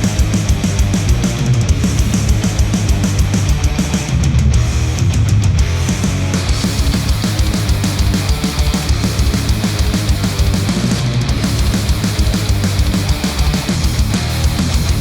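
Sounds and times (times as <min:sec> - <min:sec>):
distorted guitar: 0:00.0 - 0:15.0
fast dense drumming: 0:00.0 - 0:15.0
steady bass line: 0:00.0 - 0:15.0.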